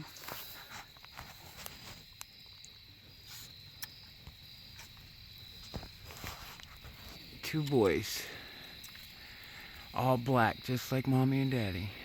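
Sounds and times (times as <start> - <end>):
small clicks and rustles: 0.0 - 8.0
crickets chirping: 0.0 - 12.0.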